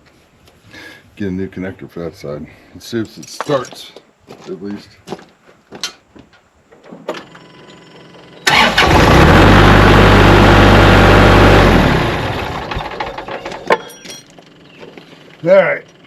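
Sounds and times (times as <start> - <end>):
tractor diesel engine starting: 7.3 - 13.5.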